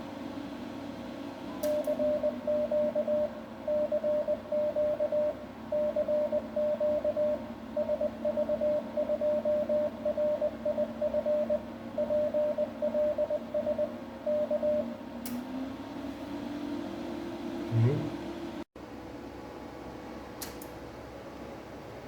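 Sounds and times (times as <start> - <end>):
steady low hum: 0.0 - 16.9
morse code tone: 1.8 - 14.9
sharp click: 20.4 - 20.8.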